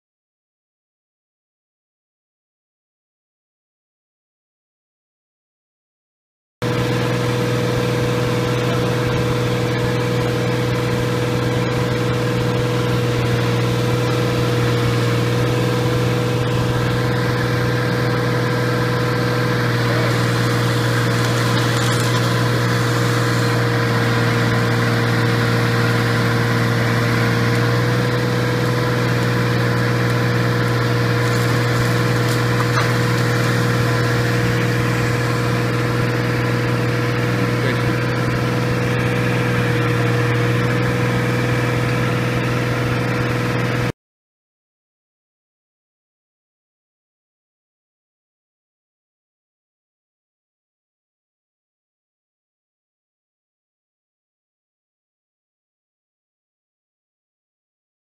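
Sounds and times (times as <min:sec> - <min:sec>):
engine running steadily: 0:06.6 - 0:43.9.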